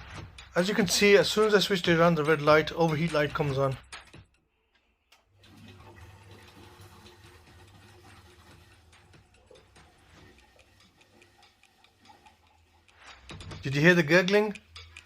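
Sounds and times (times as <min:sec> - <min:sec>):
boiler gurgling: 0:05.2 - 0:13.4
ticks and crackles: 0:08.3 - 0:15.0.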